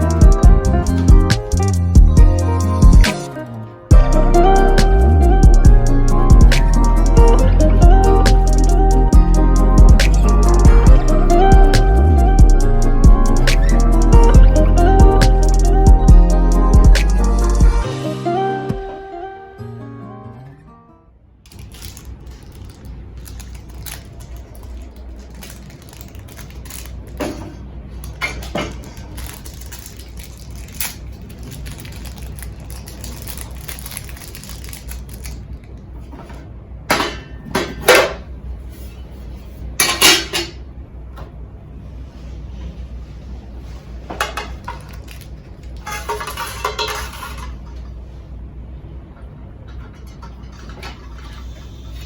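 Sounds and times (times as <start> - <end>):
steady low hum: 3.9 - 18.5
metal cookware clattering: 39.8 - 40.6, 45.8 - 47.7
metal cookware clinking: 39.8 - 40.6, 45.8 - 47.6.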